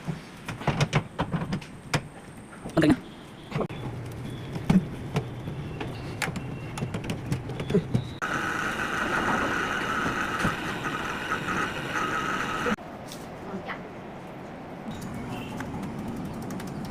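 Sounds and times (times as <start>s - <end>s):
high whirring with whine: 8.2s - 12.8s
scattered clicks: 14.9s - 16.9s.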